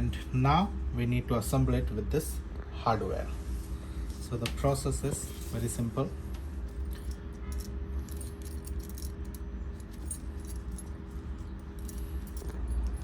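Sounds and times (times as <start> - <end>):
steady low hum: 0.0 - 13.0
metal hardware clinking: 6.7 - 13.0.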